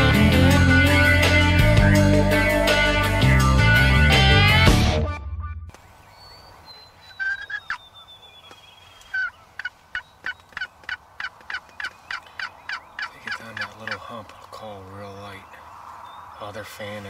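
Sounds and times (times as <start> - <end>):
wild turkey calling: 5.7 - 17.0.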